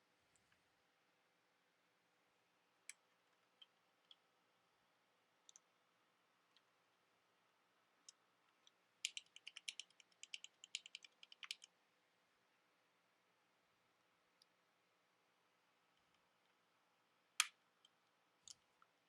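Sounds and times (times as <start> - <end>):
mechanical keyboard clicks: 9.0 - 11.7.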